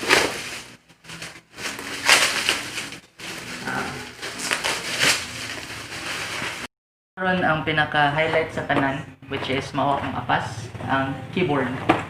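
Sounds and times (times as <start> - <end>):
packaging crinkling: 0.0 - 6.7.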